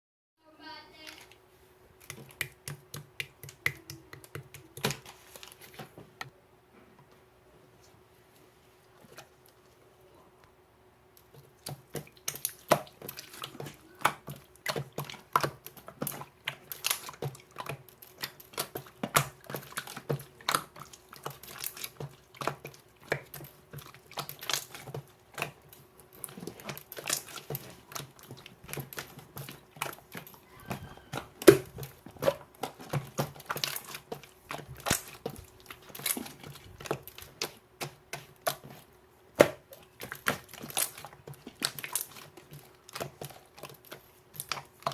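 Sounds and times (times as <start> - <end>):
slime squished by hand: 11.2 - 44.9.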